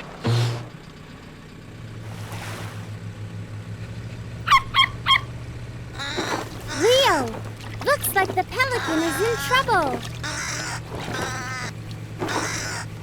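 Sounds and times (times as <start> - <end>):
water swishing: 2.0 - 3.0, 6.0 - 13.0
pelican squawks: 4.5 - 5.3, 5.9 - 13.0.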